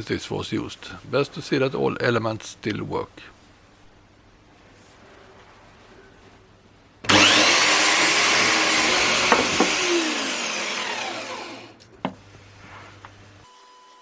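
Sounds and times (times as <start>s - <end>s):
electric motor whining: 7.1s - 11.8s.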